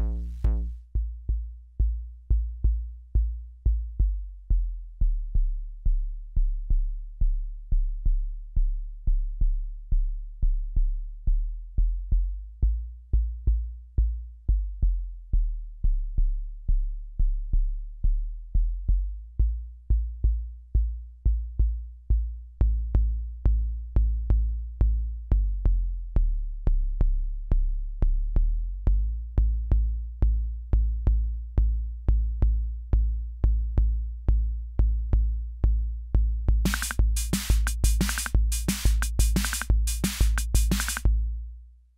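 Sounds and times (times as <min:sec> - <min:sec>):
bass synth line: 0:00.0 - 0:05.4
drum machine kick pattern: 0:36.2 - 0:41.2
bright sharp drum hits: 0:36.7 - 0:41.0.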